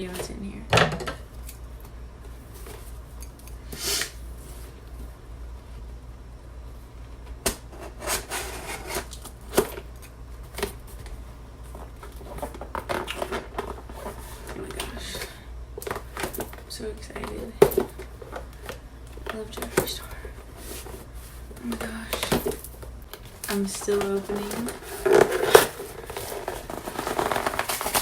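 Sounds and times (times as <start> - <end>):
packaging rustling and scraping: 7.7 - 28.0
packing tape being cut and pulled: 23.4 - 28.0.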